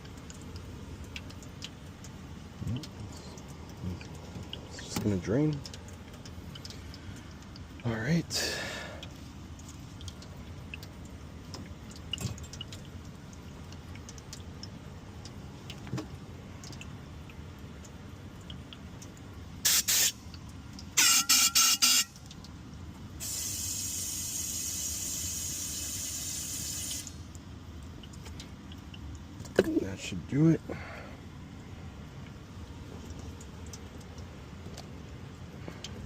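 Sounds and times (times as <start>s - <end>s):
low background noise: 0.0s - 36.0s
water spray hissing: 19.6s - 20.2s, 21.0s - 22.1s, 23.2s - 27.2s.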